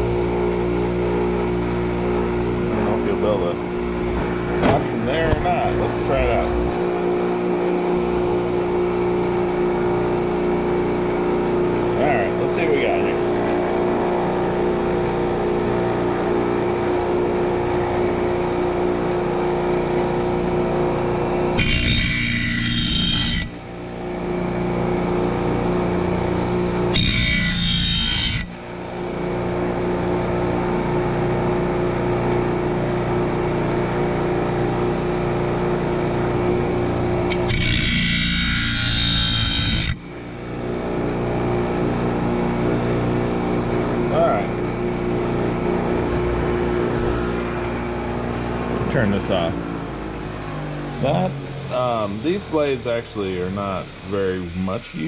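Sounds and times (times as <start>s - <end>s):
bench grinder humming: 0.0s - 55.0s
blade scraping on wire wheel: 21.6s - 23.7s, 37.3s - 40.1s.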